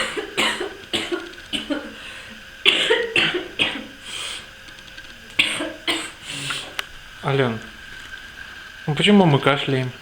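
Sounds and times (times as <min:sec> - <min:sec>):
people coughing: 0:00.0 - 0:02.0, 0:02.6 - 0:04.0, 0:05.4 - 0:06.2.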